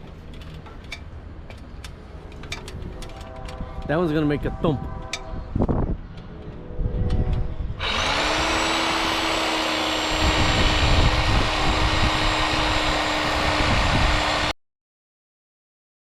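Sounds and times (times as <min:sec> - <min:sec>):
reciprocating saw cutting branch: 0:07.8 - 0:14.5.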